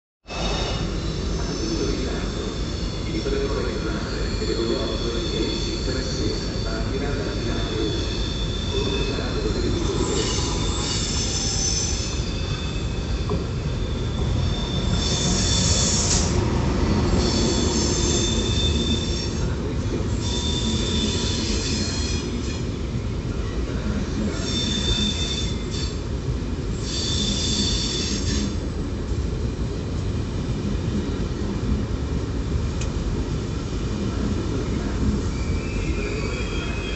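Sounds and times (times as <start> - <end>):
train wheels rumbling on rail: 0.2 - 36.9
high-pitched wheel squeals: 7.3 - 16.3, 17.1 - 19.4.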